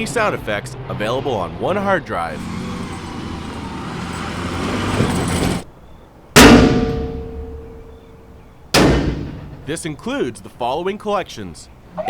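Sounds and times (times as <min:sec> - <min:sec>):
sharp hit: 0:06.4 - 0:08.1, 0:08.8 - 0:09.8
loud impact with ringing decay: 0:06.4 - 0:08.2, 0:08.8 - 0:09.8.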